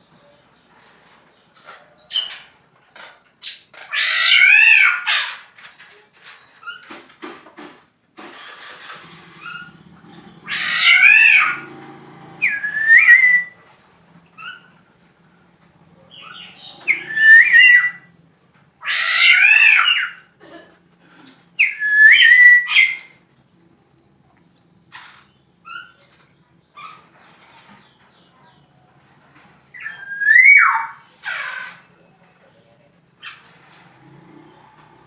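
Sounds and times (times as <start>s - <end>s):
bird harsh calls: 0.2s - 5.7s, 9.2s - 13.6s, 15.8s - 18.1s, 18.8s - 20.4s, 21.2s - 23.2s, 29.6s - 32.2s
bird whistled phrases: 12.4s - 13.6s, 16.1s - 18.1s, 21.6s - 23.1s, 29.8s - 31.0s.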